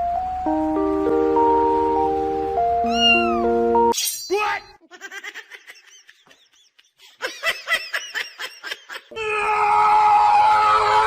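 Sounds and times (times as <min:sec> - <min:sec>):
long steady cry: 0:09.1 - 0:11.0.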